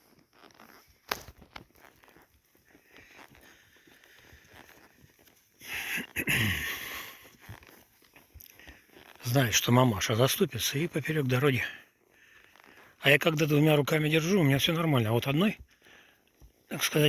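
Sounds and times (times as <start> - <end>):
faint rustling: 0.0 - 14.8.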